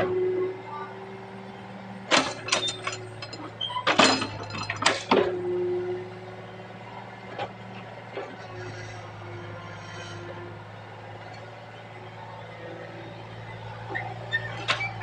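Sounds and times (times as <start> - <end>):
excavator engine running: 0.0 - 15.0
sharp clanks and knocks: 2.1 - 5.3.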